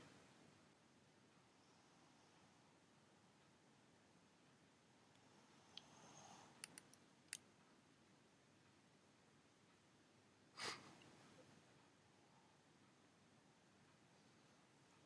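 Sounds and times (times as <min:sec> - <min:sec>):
faint clicks: 0:05.1 - 0:07.7.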